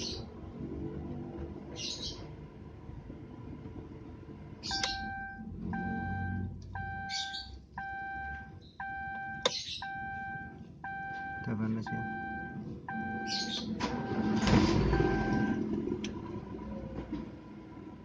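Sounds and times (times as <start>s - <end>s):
car engine idling: 1.5s - 18.0s
pitched beep: 4.7s - 15.6s.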